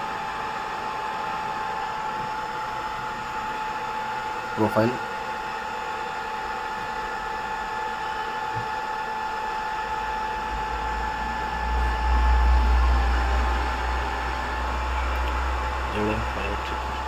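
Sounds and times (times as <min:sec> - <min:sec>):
hot-air station fan blowing: 0:00.0 - 0:17.0.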